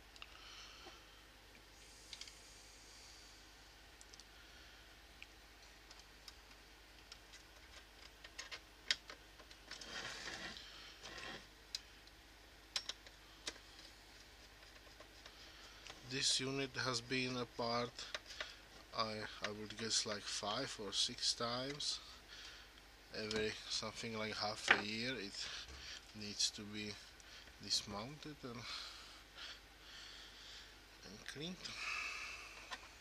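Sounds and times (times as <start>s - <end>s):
rustling scrape: 9.8s - 11.5s.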